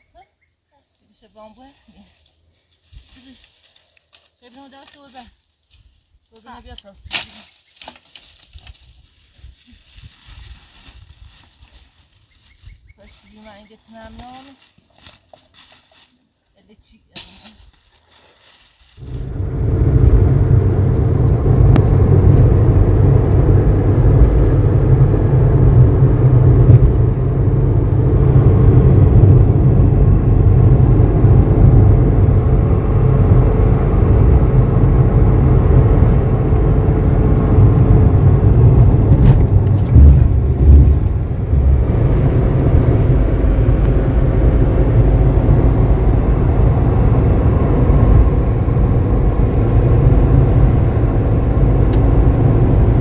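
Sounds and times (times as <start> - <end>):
electric motor humming: 19.0 - 53.0
steady whining tone: 19.0 - 53.0.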